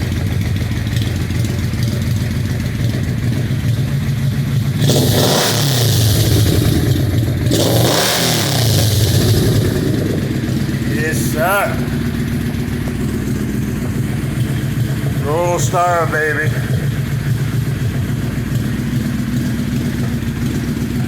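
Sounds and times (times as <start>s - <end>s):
motorcycle engine idling and revving: 0.0s - 21.0s
man talking: 10.8s - 12.1s, 15.2s - 17.0s.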